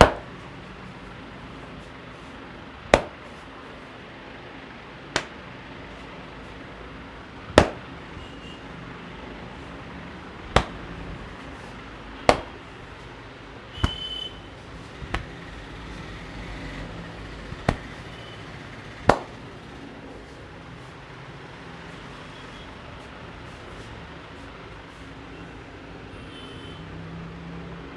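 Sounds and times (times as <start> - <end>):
hand slaps on head: 2.9 - 3.2, 5.1 - 5.4, 10.5 - 10.8, 15.1 - 15.3, 19.0 - 19.4.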